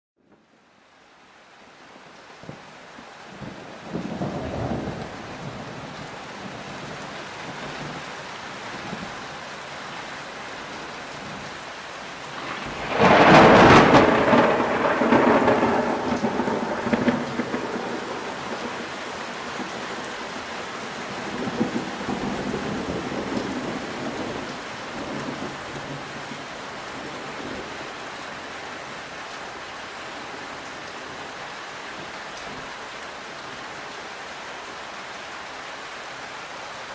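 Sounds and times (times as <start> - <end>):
steady rain: 0.2 - 36.9
thunder rumbling: 3.3 - 8.0, 12.3 - 28.0.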